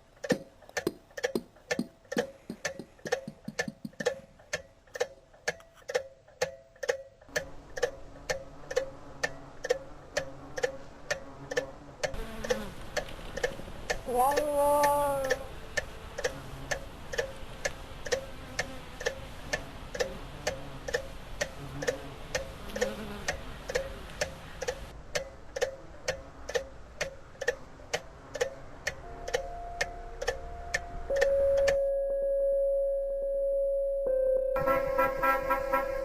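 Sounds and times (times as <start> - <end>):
clock ticking: 0.0 - 31.8
steady electronic tone: 29.0 - 36.0.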